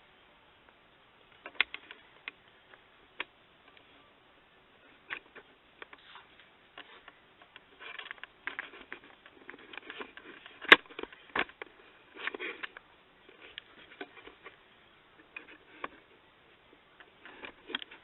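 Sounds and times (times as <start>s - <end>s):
handling taps and rustles: 5.0s - 14.6s, 16.7s - 18.0s.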